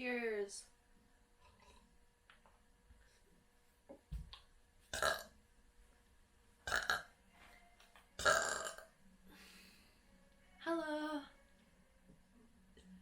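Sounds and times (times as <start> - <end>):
woman burping: 5.0 - 5.3, 6.7 - 7.1, 8.2 - 8.9.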